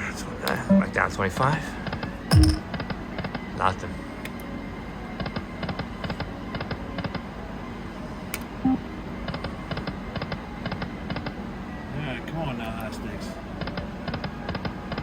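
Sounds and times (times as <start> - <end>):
short beep: 0.7 - 1.0, 2.3 - 2.6.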